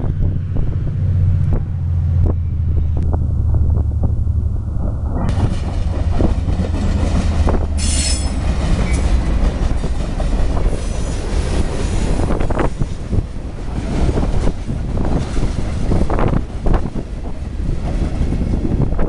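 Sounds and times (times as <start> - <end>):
freight train rumbling: 0.0 - 19.0
high-pitched wheel squeal: 7.8 - 9.0.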